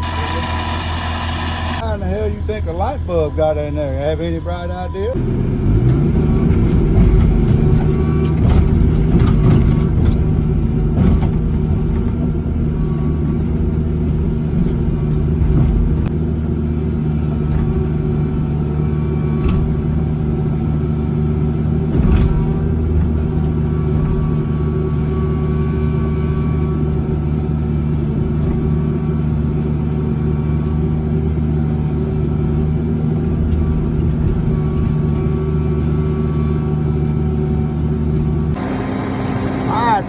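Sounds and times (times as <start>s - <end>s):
heavy machinery engine running: 0.0s - 40.0s.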